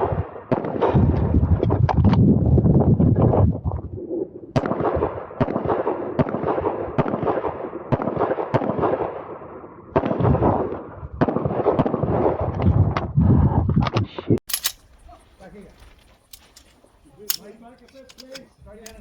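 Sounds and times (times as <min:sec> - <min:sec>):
handgun shots: 0:14.5 - 0:19.0.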